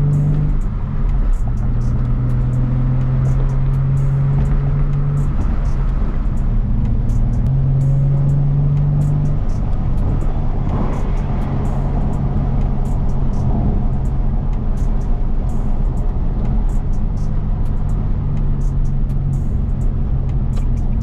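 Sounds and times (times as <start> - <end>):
low rumble of moving car: 0.0 - 21.0
music with deep bass line: 0.0 - 21.0.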